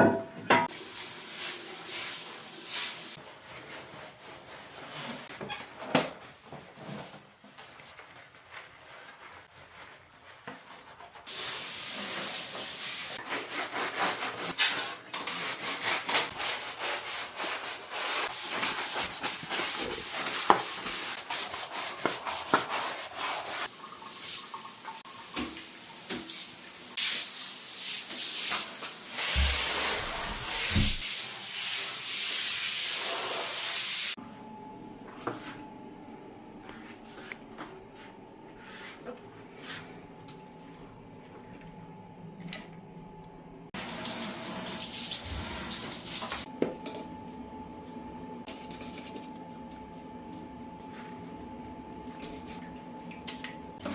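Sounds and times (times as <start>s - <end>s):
scrubbing strokes: 6.9s - 14.6s, 15.3s - 23.7s
water spraying hard: 27.0s - 34.2s.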